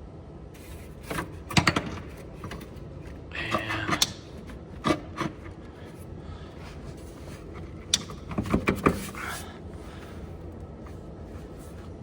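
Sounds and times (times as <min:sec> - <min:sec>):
tools knocking and rattling: 0:01.0 - 0:05.6, 0:07.5 - 0:09.3.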